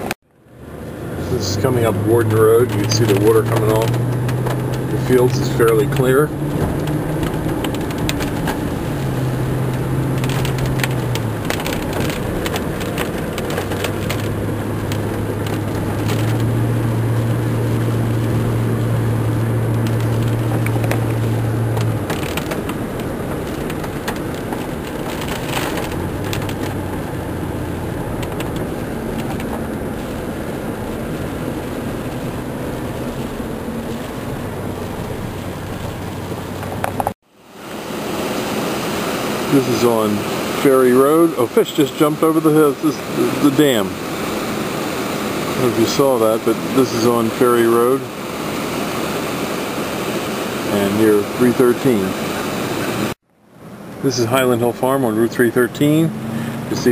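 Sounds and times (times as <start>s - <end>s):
car engine humming: 0.0s - 56.9s
road noise inside car: 0.0s - 56.9s
crackles: 1.2s - 37.2s.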